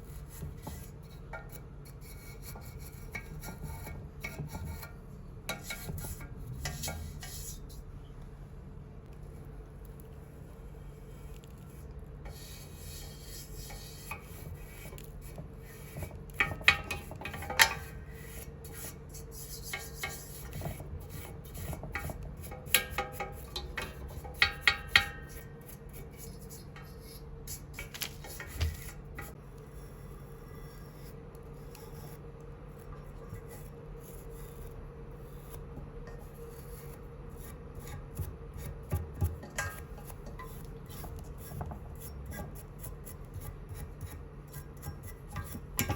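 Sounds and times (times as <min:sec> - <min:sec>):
hand scrubbing brass: 0:12.3 - 0:30.0.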